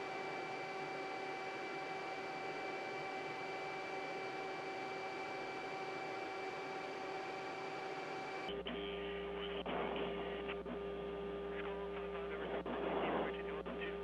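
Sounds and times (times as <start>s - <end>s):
dull electrical hum: 0.0s - 14.0s
steady whining tones: 0.0s - 14.0s
radio channel electrical hiss: 5.4s - 14.0s.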